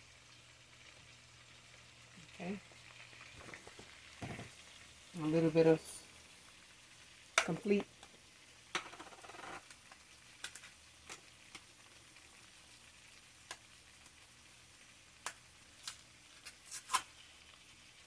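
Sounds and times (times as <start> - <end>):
utensils tapping a pot: 8.7 - 9.7.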